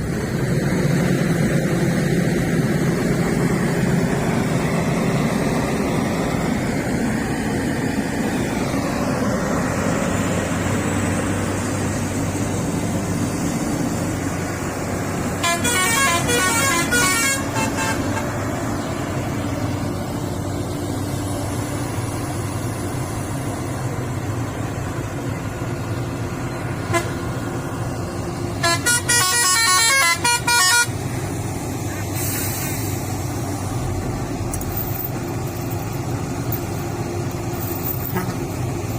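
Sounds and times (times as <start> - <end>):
diesel machinery running: 0.0 - 38.9
vehicle horn toots: 15.4 - 18.3, 26.9 - 27.2, 28.6 - 30.9.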